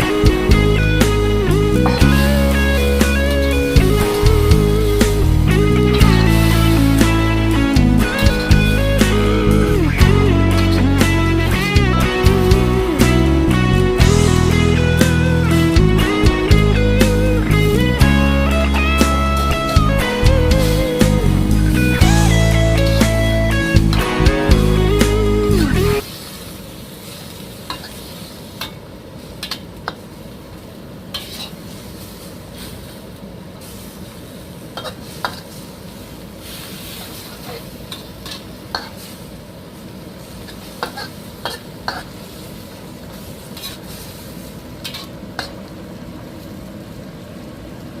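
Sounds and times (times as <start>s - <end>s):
music: 0.0s - 26.0s
meat sizzling in a pan: 26.0s - 30.4s, 31.1s - 45.6s
spatula scraping a pan: 31.1s - 31.6s, 43.5s - 45.1s.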